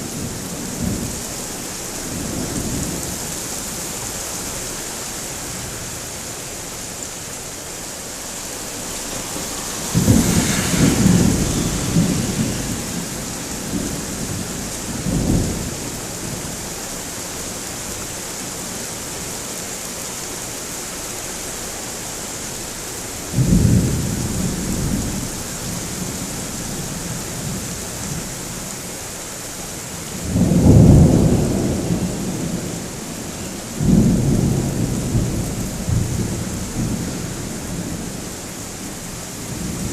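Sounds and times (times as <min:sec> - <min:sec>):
steady rain: 0:00.0 - 0:39.9
thunder rolling: 0:08.5 - 0:16.5
thunder crack: 0:08.6 - 0:15.9.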